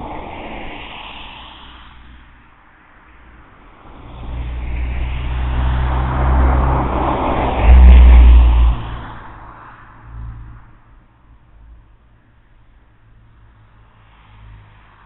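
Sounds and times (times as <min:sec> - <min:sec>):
vehicle passing with deep rumble: 0:03.2 - 0:12.1.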